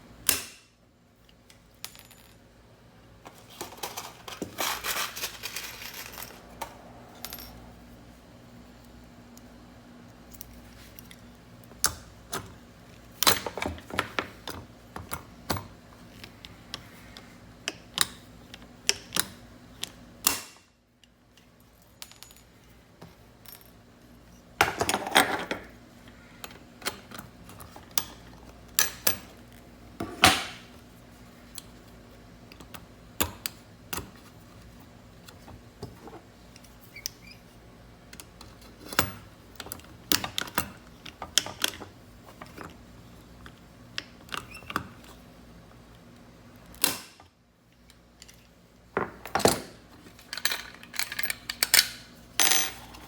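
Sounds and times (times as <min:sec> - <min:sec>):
parts rattling: 0:03.3 - 0:07.6.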